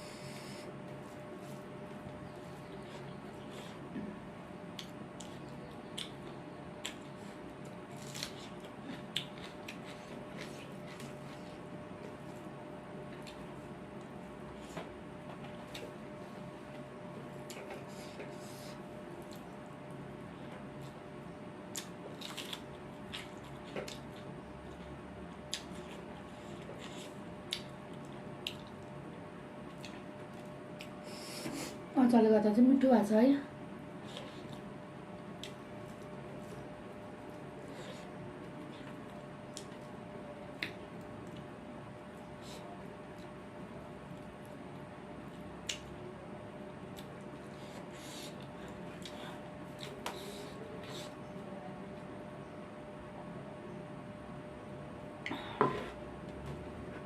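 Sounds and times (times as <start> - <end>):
faint steady hum: 0.0 - 57.0
chewing and mouth smacks: 4.8 - 7.2, 8.0 - 11.3, 25.5 - 28.9, 35.4 - 36.1, 45.3 - 46.0, 46.9 - 51.2.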